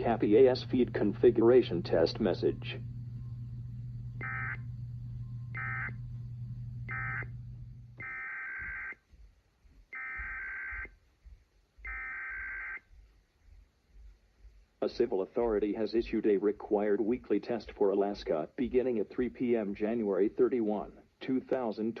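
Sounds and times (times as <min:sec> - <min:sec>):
steady low hum: 0:00.0 - 0:09.0.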